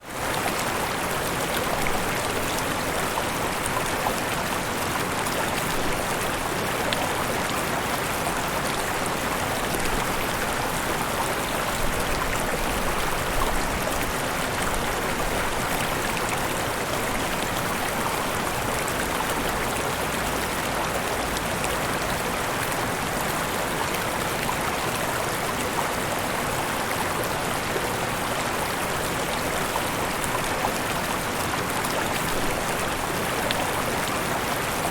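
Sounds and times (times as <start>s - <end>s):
river rushing over waterfalls: 0.1s - 34.9s.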